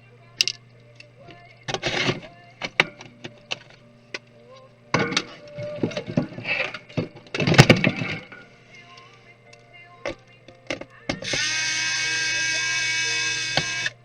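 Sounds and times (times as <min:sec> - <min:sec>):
plastic parts clicking: 0:00.4 - 0:01.1, 0:10.6 - 0:14.0
plastic scraping and rattling: 0:01.7 - 0:03.8, 0:05.0 - 0:08.5.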